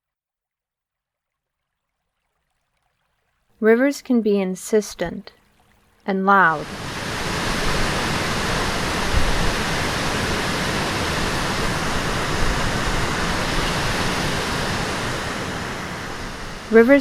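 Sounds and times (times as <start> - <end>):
fast water rushing: 5.4 - 17.0.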